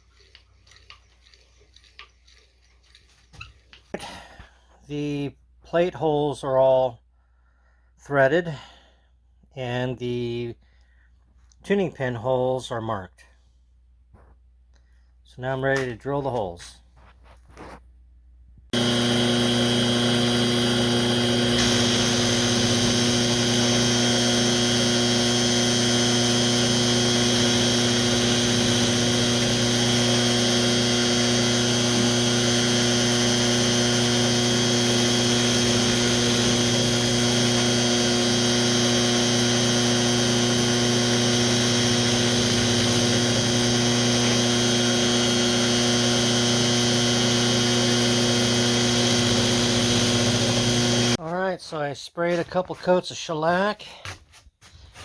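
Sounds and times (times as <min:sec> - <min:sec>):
electric drill running steadily: 0:18.7 - 0:51.2.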